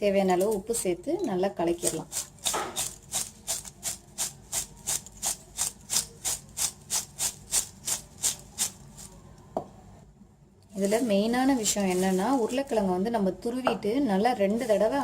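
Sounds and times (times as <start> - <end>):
spoon stirring dry snack: 1.8 - 9.2, 10.8 - 12.6.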